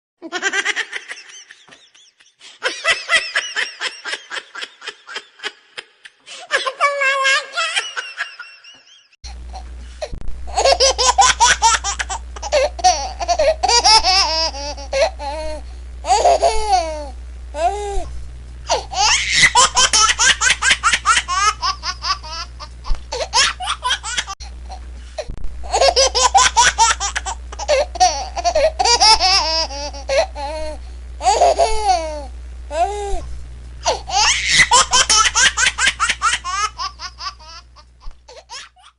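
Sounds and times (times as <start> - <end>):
high-pitched laughing: 0.2 - 9.1, 10.5 - 15.4, 18.8 - 24.4, 33.9 - 37.9
steady low hum: 9.2 - 38.9.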